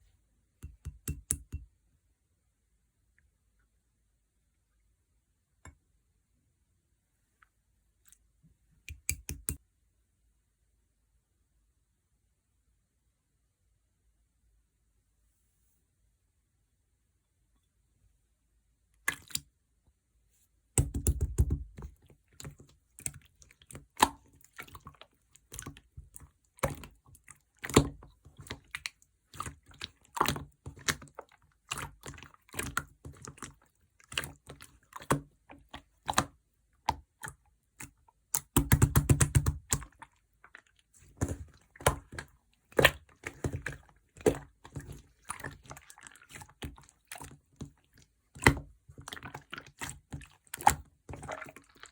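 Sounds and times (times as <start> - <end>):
slime squelching: 19.0 - 19.5, 20.8 - 51.9
slime clicking and popping: 20.8 - 21.7, 38.3 - 39.9.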